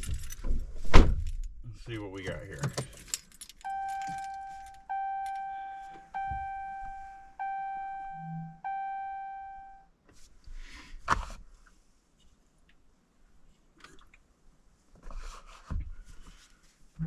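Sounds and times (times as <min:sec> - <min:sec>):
car warning chime: 0:03.6 - 0:09.9.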